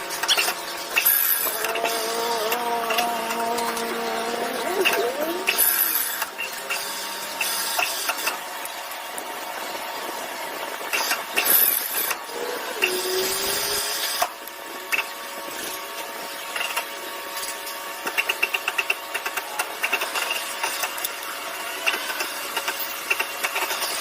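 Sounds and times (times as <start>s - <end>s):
machine humming: 0.0s - 15.8s
scattered clicks: 0.1s - 8.8s, 18.0s - 24.0s.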